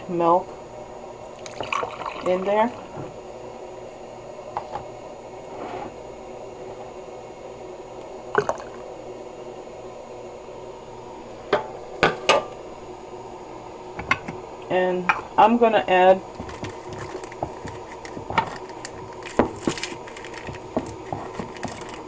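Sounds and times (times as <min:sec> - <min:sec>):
espresso machine humming: 0:00.0 - 0:22.0
faint liquid sounds: 0:01.0 - 0:06.0, 0:07.9 - 0:09.1
kitchenware clinking: 0:11.6 - 0:12.6.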